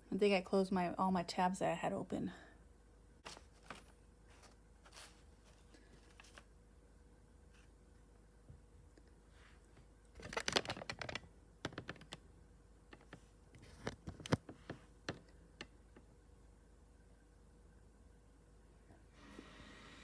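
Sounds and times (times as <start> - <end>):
laptop keyboard typing: 10.2 - 12.2.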